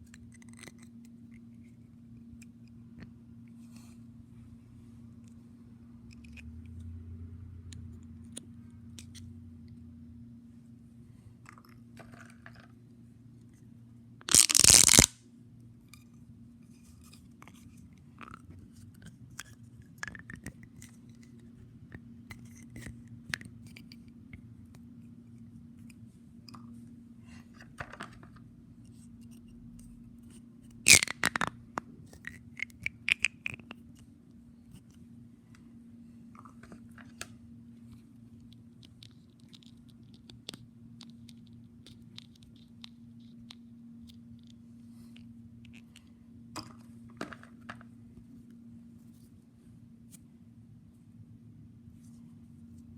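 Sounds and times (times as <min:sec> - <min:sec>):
low steady hum: 0:00.0 - 0:52.9
fidget toys clicking and crackling: 0:14.2 - 0:15.2, 0:30.9 - 0:33.9, 0:38.4 - 0:44.6
loud scratchy sounds: 0:14.3 - 0:15.1.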